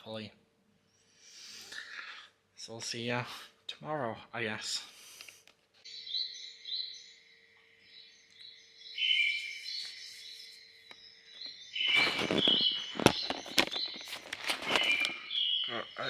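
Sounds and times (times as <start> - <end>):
birds chirping and whistling: 5.8 - 16.0
rustling with sharp knocks: 11.9 - 15.2.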